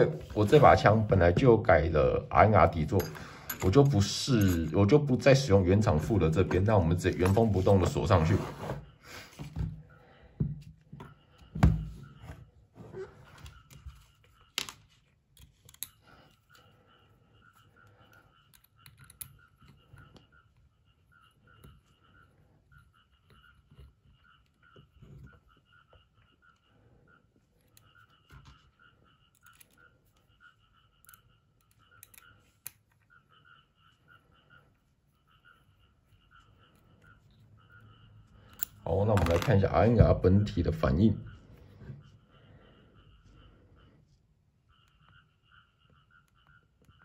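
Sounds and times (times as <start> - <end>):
clicks of small parts handled: 14.5 - 16.0
small hard parts clicking and knocking: 14.5 - 16.4, 18.1 - 20.2.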